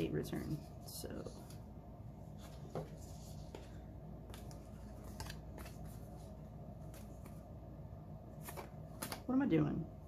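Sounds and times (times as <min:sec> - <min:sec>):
paper envelopes rustling: 0:02.3 - 0:07.5.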